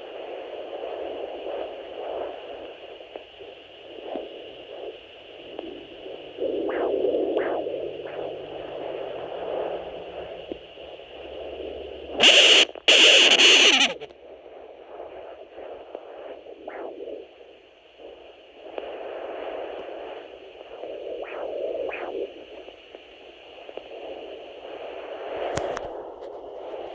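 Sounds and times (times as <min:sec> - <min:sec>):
loud crackling bursts: 0:12.2 - 0:14.1.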